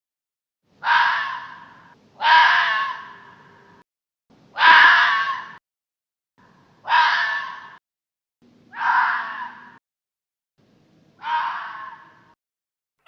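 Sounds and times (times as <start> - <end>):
fox calling: 0.8 - 3.6, 4.6 - 5.6, 6.8 - 7.8, 8.7 - 9.8, 11.2 - 12.4.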